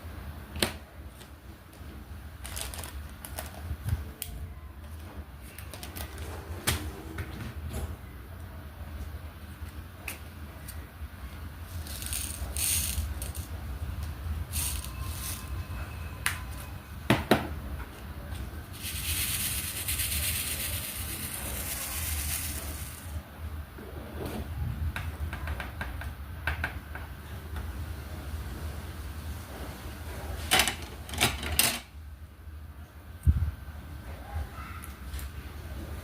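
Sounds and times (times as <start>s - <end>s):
plastic beads rattling in a tray: 11.7s - 13.6s, 14.5s - 15.6s, 18.7s - 23.2s.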